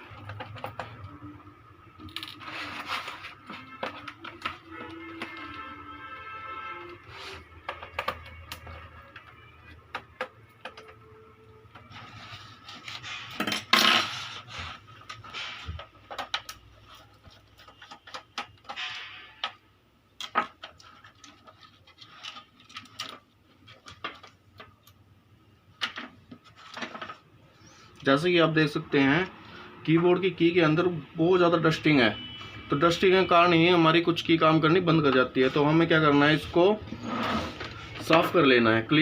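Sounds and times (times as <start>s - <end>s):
plastic keyboard parts clattering: 0.0s - 1.2s, 2.0s - 5.6s, 7.6s - 11.1s, 12.7s - 19.6s, 20.2s - 25.0s.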